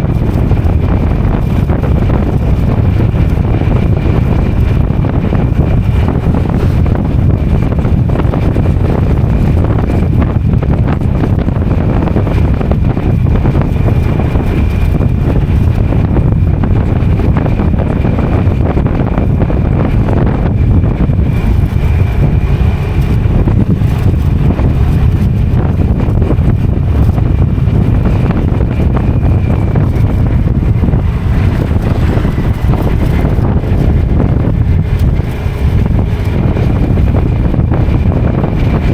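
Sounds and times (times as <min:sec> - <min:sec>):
motorcycle engine running: 0:00.0 - 0:38.9
wind buffeting microphone: 0:00.0 - 0:38.9.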